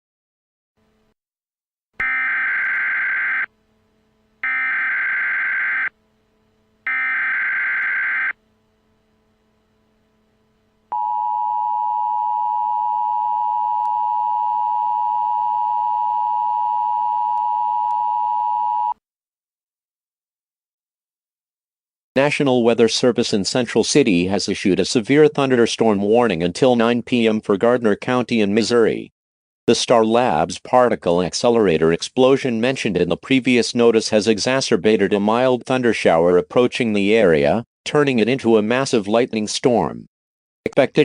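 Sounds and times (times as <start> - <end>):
steady two-tone attention signal: 10.9 - 19.0.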